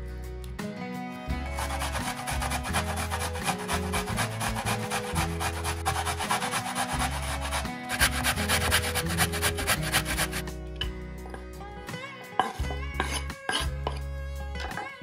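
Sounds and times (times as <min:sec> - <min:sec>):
music with bass and chords: 0:00.0 - 0:15.0
scratchy percussive beat: 0:01.5 - 0:10.4.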